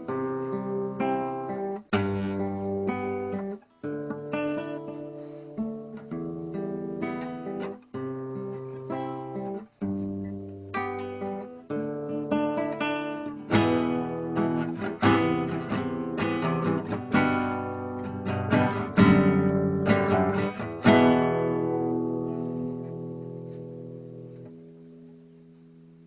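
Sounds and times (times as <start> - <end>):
acoustic guitar strumming chords: 0.0 - 26.0.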